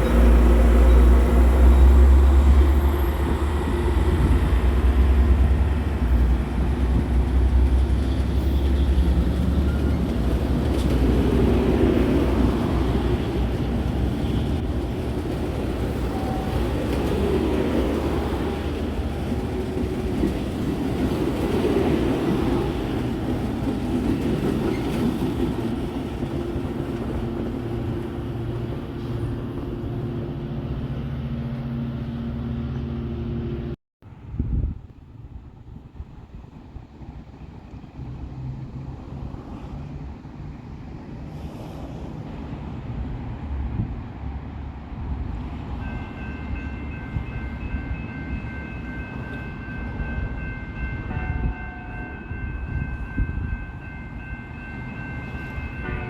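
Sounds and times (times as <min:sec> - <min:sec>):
train cars rolling by: 0:00.0 - 0:34.2
train engine rumble: 0:00.0 - 0:56.0.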